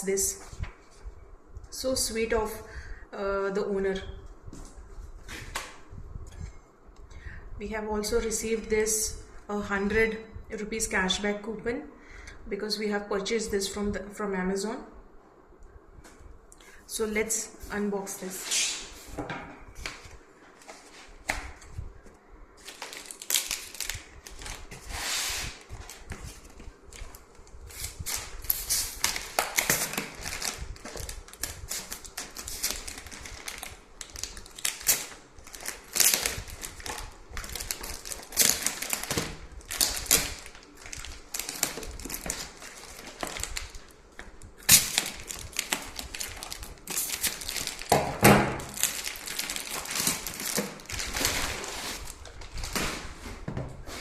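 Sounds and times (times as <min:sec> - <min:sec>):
packaging crinkling: 0:22.6 - 0:24.9, 0:25.5 - 0:53.2.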